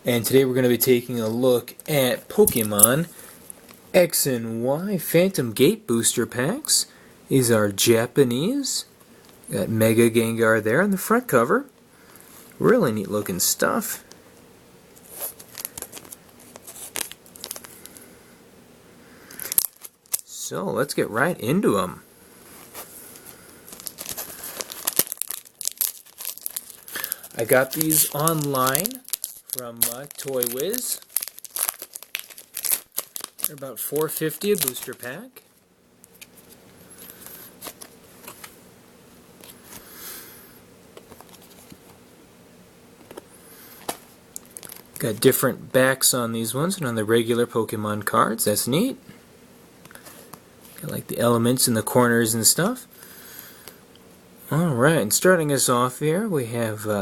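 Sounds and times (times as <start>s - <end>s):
foil wrappers crinkling: 1.0s - 3.9s, 15.0s - 18.1s, 19.2s - 20.4s, 22.5s - 38.6s, 43.1s - 45.3s.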